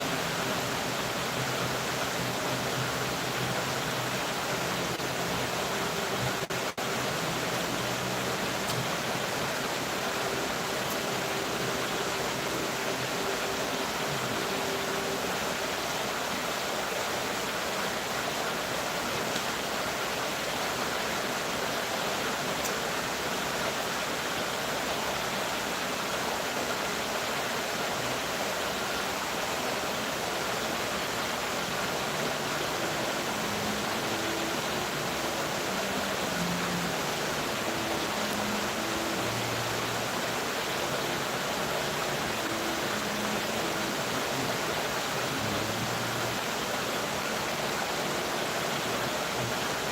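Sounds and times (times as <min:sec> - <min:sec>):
rain falling: 0:00.0 - 0:49.9.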